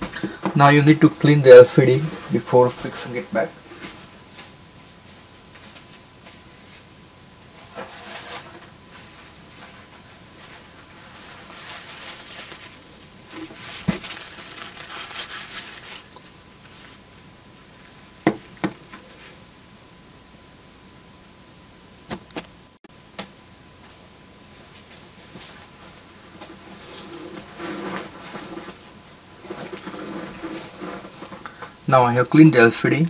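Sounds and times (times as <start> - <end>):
rubbing a small screen: 7.5 - 17.1, 26.4 - 28.8, 29.4 - 31.4.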